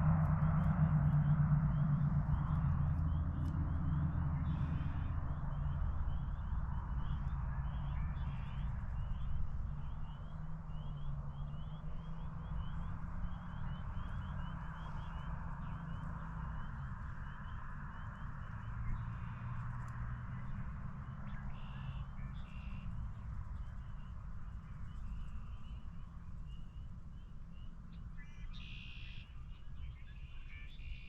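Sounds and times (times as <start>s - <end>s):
low rumble: 0.0s - 10.2s
frogs peeping in chorus: 0.6s - 19.7s, 20.4s - 31.0s.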